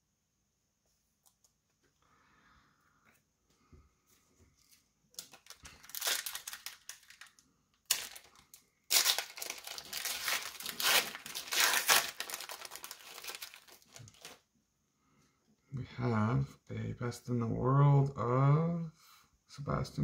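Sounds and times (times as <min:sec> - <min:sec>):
wrapper crinkling: 0:04.6 - 0:14.4
wrapper ripping: 0:05.1 - 0:14.4.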